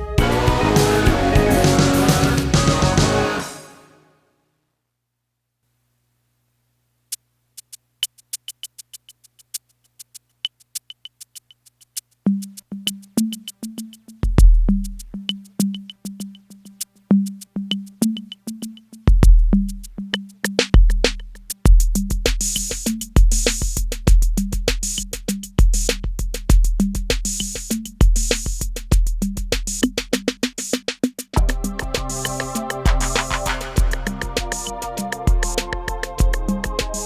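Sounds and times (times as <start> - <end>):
clicking hi-hats: 7.1 - 37.0
deep kick drums: 14.2 - 15.1, 19.1 - 19.9, 20.8 - 22.5, 23.2 - 24.8, 25.6 - 27.4, 28.0 - 30.1, 31.4 - 32.1, 32.9 - 37.0
cymbal hiss: 31.4 - 37.0
pitched drum hits: 31.4 - 37.0.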